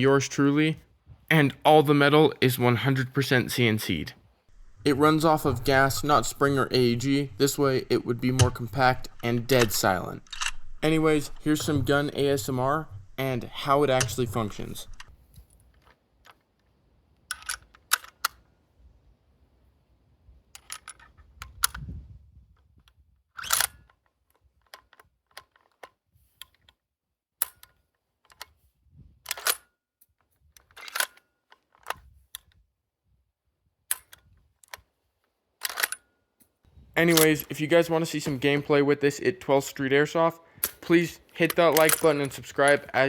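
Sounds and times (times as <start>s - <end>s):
rifle bolt action clicks: 4.6s - 15.1s, 17.3s - 18.4s, 27.4s - 28.5s, 29.3s - 29.7s, 30.6s - 32.6s, 33.9s - 34.8s, 35.6s - 36.0s, 37.1s - 37.5s, 40.6s - 42.9s.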